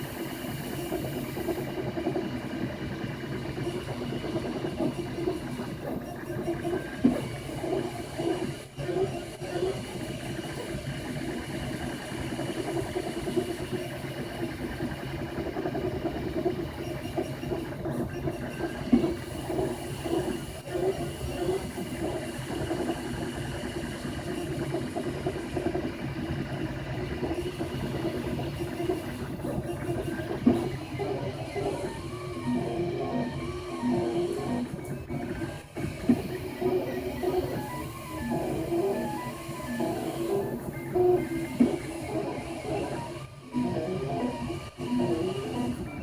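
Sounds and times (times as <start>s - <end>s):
printer motors and fan humming: 0.0s - 46.0s.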